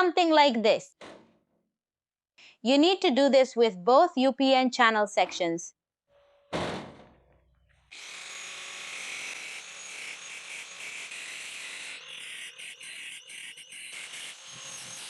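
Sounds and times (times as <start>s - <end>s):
angle grinder cutting steel: 7.9s - 15.0s.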